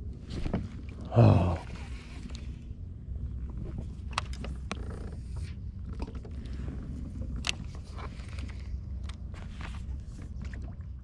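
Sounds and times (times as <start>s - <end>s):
low steady rumble: 0.0s - 11.0s
fishing gear clicks and creaks: 3.9s - 6.5s, 7.1s - 9.6s.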